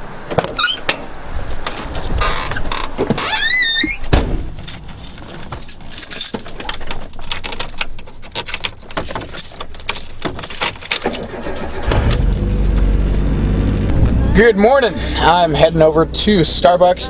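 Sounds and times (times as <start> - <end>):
keys jangling: 4.6 - 11.3, 12.1 - 13.1.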